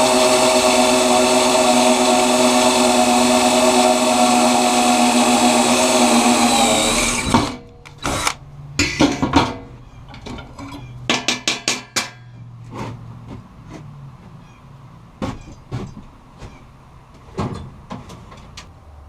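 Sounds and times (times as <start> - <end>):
power tool motor running: 0.0 - 8.4
metal parts knocking and clanking: 8.8 - 12.3.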